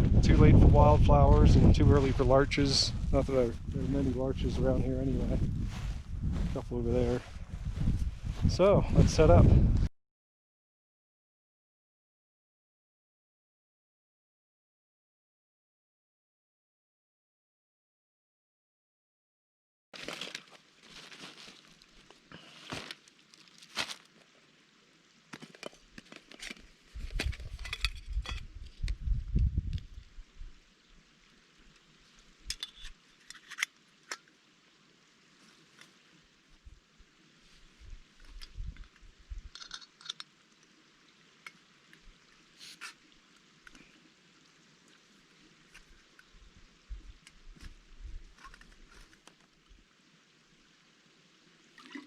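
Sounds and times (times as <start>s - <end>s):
wind buffeting the microphone: 0.0s - 9.9s, 26.9s - 30.6s, 37.8s - 39.6s
camping gear rustling and clicking: 20.0s - 24.4s, 25.3s - 29.9s, 31.6s - 34.4s, 35.4s - 36.1s, 37.4s - 40.4s, 41.4s - 43.9s, 44.8s - 46.4s, 47.2s - 49.6s.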